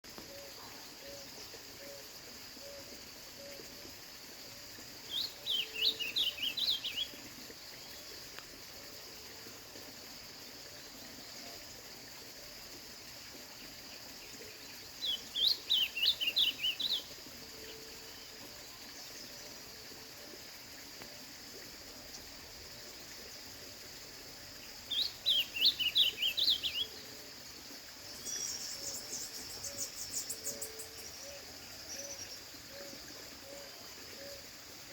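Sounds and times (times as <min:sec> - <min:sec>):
bird singing warbled phrases: 0:05.1 - 0:07.2, 0:15.0 - 0:17.1, 0:24.9 - 0:27.0.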